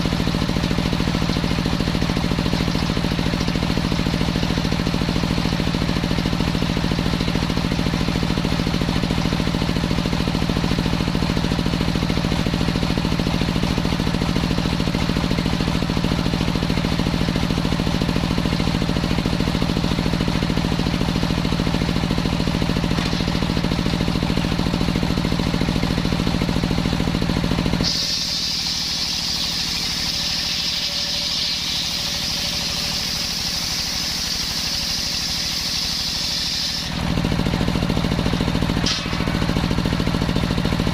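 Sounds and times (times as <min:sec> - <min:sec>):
engine-driven circular saw: 0:00.0 - 0:40.9.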